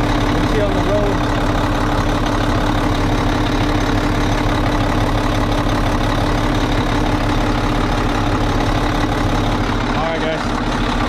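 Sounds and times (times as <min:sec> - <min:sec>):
diesel truck engine running: 0:00.0 - 0:11.0.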